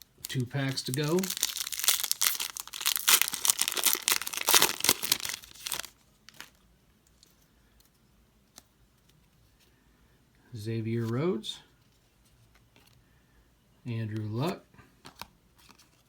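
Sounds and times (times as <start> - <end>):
wrapper tearing and crinkling: 0.0 - 6.6.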